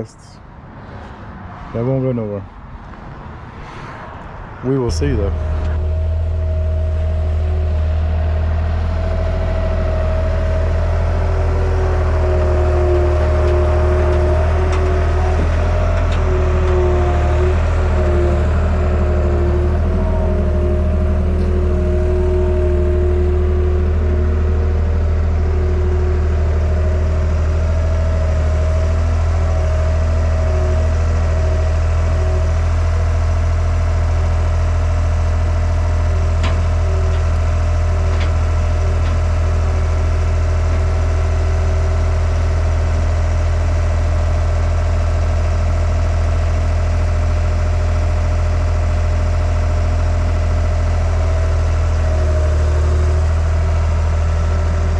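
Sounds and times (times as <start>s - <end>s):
truck engine droning: 0.0s - 54.9s
wavering whine: 2.8s - 42.0s.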